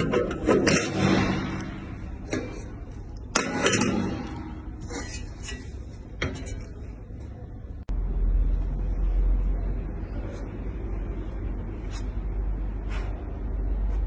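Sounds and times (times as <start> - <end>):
steady low rumble: 0.0 - 3.4, 7.3 - 14.0.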